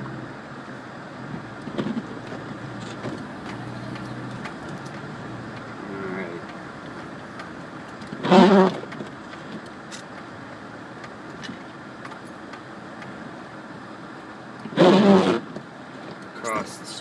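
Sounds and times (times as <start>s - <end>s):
road and engine noise in car: 0.0s - 17.0s.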